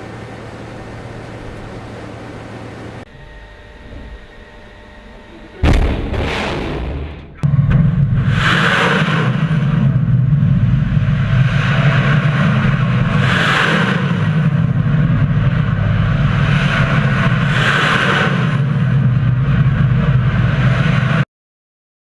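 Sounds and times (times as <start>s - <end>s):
loud engine-like rumble: 0.0s - 21.2s.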